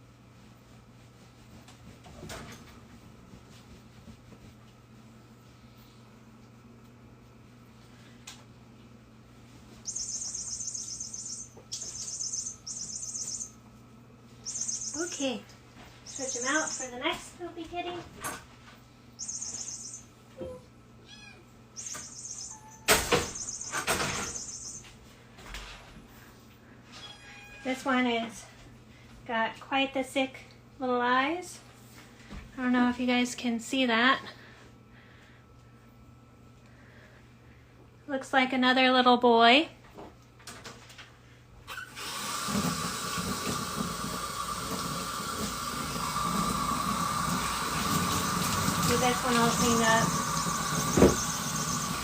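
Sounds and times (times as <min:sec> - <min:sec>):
tap water running into sink: 0:42.0 - 0:52.0
faint whistle in water flow: 0:50.8 - 0:52.0.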